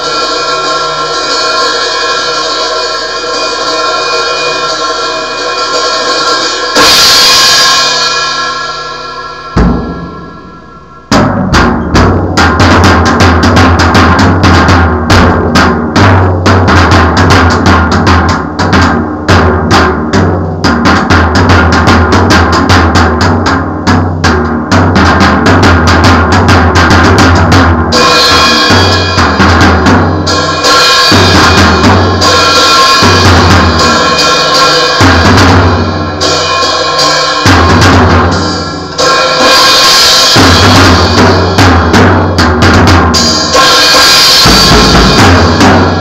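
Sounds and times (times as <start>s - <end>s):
cymbal crash: 0.0s - 18.0s, 27.9s - 46.0s
fast steady drumming: 0.0s - 46.0s
music: 0.0s - 46.0s.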